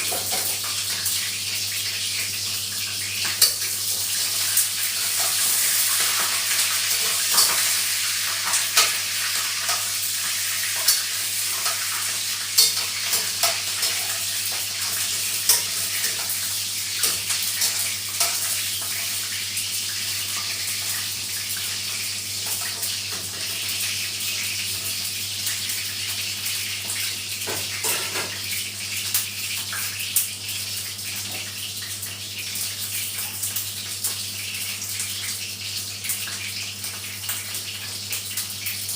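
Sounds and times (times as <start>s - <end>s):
pots and utensils clinking: 0.0s - 1.1s, 5.1s - 16.4s, 27.4s - 28.5s
steady kitchen hissing: 0.0s - 38.9s.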